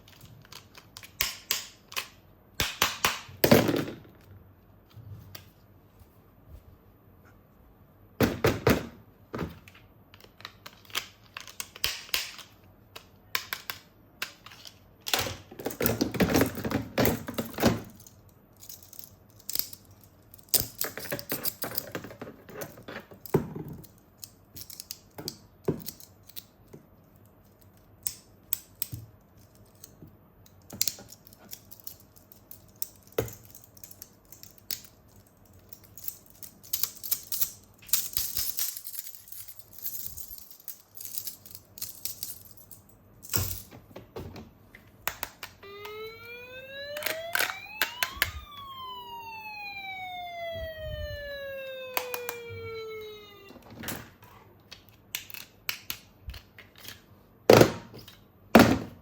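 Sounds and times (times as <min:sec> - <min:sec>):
plastic toys clicking and knocking: 0:00.0 - 0:04.3, 0:08.2 - 0:42.5, 0:46.8 - 0:48.6, 0:51.7 - 0:53.7, 0:54.7 - 0:57.0.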